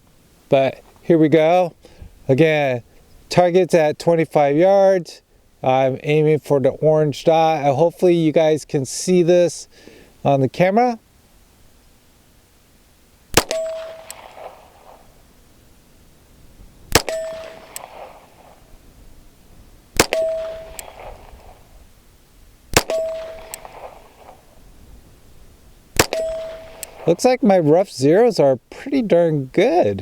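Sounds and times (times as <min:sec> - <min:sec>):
pistol shots: 0:13.3 - 0:15.1, 0:16.9 - 0:18.6, 0:20.0 - 0:21.7, 0:22.7 - 0:24.5, 0:26.0 - 0:27.2
brief metallic ring: 0:20.1 - 0:20.8, 0:22.8 - 0:23.6, 0:26.0 - 0:26.9.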